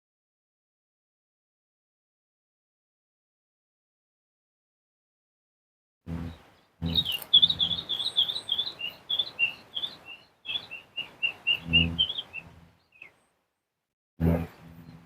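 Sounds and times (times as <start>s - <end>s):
small bird chirping song: 6.1s - 13.4s.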